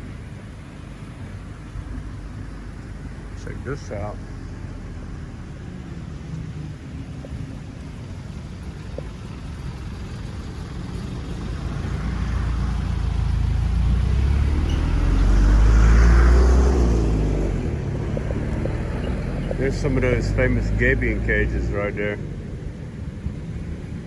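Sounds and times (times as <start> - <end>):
vehicle passing: 0.0 - 24.0.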